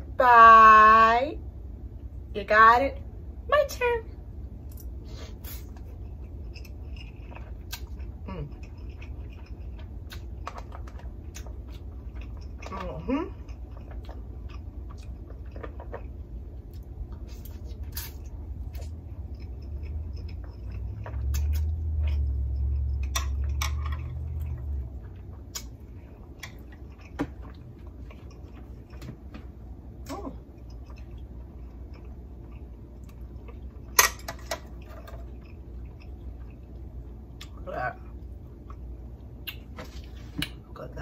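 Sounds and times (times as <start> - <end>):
chewing and smacking: 5.6 - 40.6
low rumble: 5.7 - 26.5.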